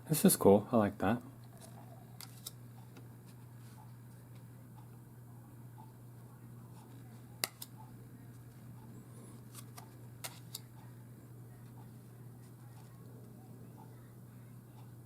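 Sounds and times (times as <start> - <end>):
steady low hum: 0.0 - 15.0
cards clicking: 1.6 - 2.6, 7.4 - 7.8, 9.5 - 10.7.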